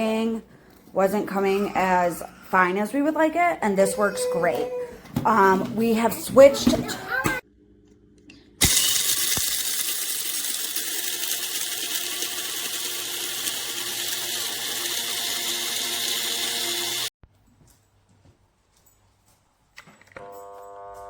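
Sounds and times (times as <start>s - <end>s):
coffee grinder whirring: 8.6s - 17.1s.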